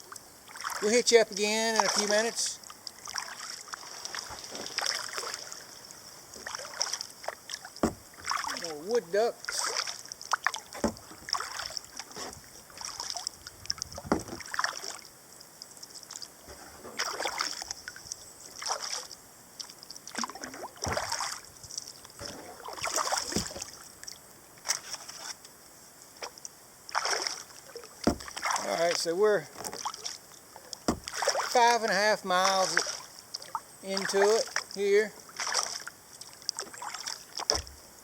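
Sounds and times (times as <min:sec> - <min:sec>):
paddle swishing through water: 0:00.0 - 0:15.2, 0:15.8 - 0:25.4, 0:26.2 - 0:37.8
water dripping off paddle: 0:00.1 - 0:16.4, 0:26.2 - 0:37.8.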